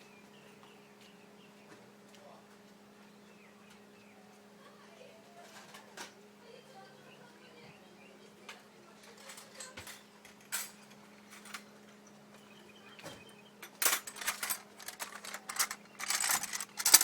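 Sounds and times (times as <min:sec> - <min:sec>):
metal hand tools clattering: 0:13.6 - 0:17.0.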